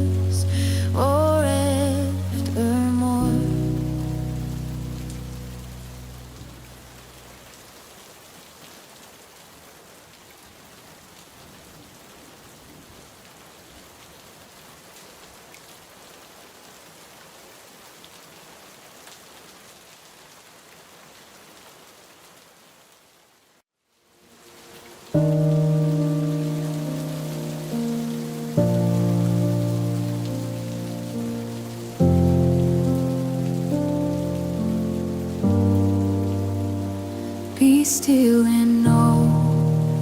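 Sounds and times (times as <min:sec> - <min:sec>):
sustained music chord: 0:00.0 - 0:07.2, 0:25.1 - 0:40.0
low music notes: 0:00.0 - 0:07.3, 0:25.1 - 0:40.0
rain patter: 0:00.0 - 0:40.0.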